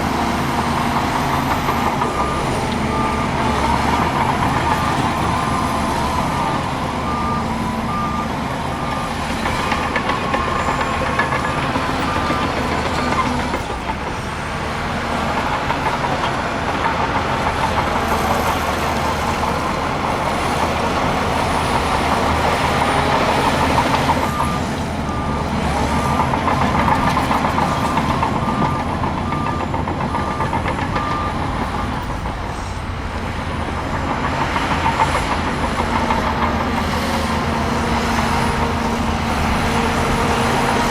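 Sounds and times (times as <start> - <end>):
diesel engine under load: 0.0 - 40.9
reversing alarm beeping: 0.5 - 14.2, 21.2 - 33.0.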